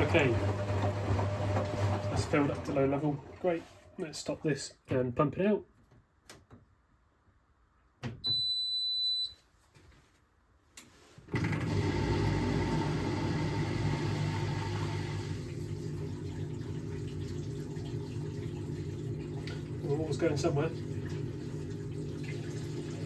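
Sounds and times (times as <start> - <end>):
drain pump humming: 0.0 - 3.6, 11.4 - 23.0.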